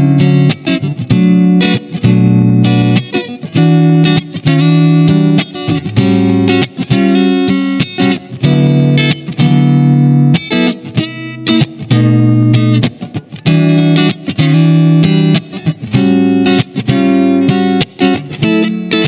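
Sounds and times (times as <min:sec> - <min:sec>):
electric guitar strummed chords: 0:00.0 - 0:19.0.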